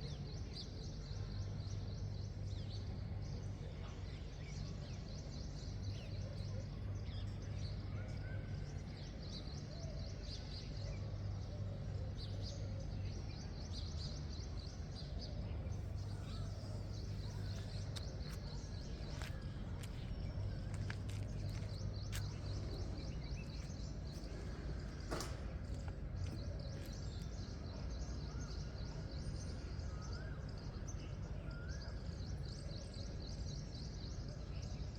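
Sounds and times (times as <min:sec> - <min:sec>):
steady low hum: 0:00.0 - 0:34.7
small birds chirping: 0:12.2 - 0:34.9.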